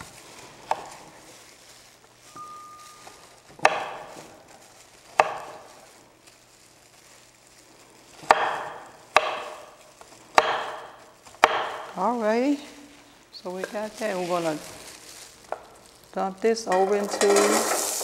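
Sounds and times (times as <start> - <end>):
knife chopping on cutting board: 0.6 - 1.0, 3.6 - 4.2, 5.1 - 5.6, 8.2 - 9.7, 10.3 - 12.0.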